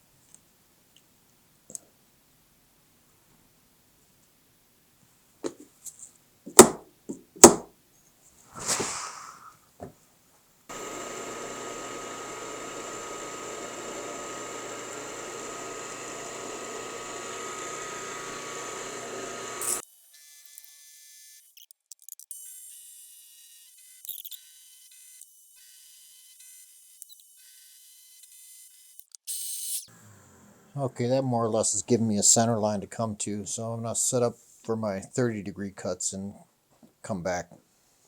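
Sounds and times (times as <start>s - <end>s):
sharp knocks on metal: 6.5s - 6.8s, 7.4s - 7.7s
brief rush of noise: 8.5s - 9.6s
milling machine whining: 10.7s - 19.8s.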